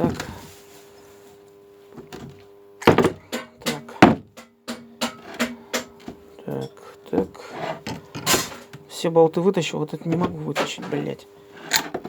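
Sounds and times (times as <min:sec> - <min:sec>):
metal tools knocking on metal: 0:02.8 - 0:06.0.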